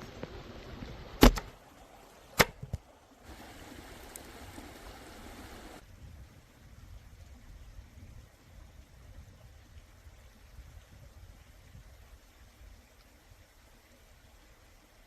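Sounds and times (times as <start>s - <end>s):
faint rustling hiss: 0.0s - 15.0s.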